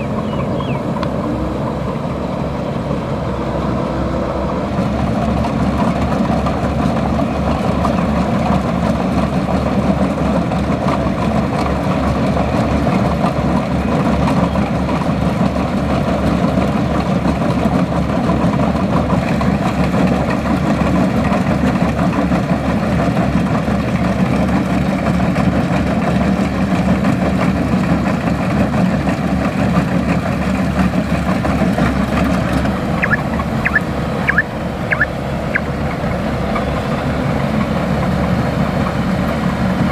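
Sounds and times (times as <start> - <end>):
diesel engine running: 0.0 - 39.9
short high chirps: 33.0 - 35.6.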